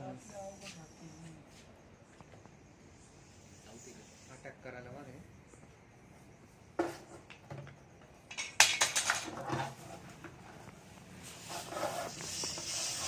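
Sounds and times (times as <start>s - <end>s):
snake hissing: 2.8s - 4.6s, 11.1s - 13.0s
hard objects clattering: 6.8s - 10.4s.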